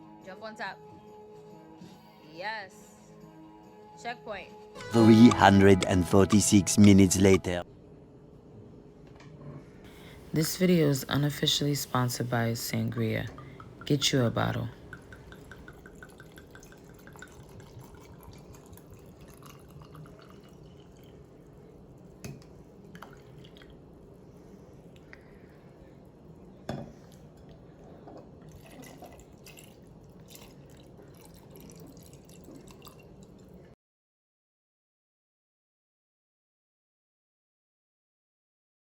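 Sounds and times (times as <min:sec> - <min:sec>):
liquid pouring into a glass: 0:09.9 - 0:24.1, 0:27.0 - 0:33.7
small drips: 0:12.2 - 0:23.8, 0:28.4 - 0:33.8.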